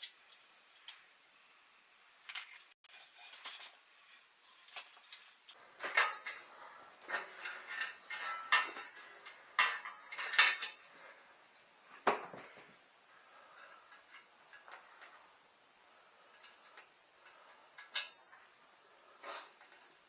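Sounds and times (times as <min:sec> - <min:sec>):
metal tools clinking and clanking: 0:05.1 - 0:11.3, 0:16.3 - 0:18.6.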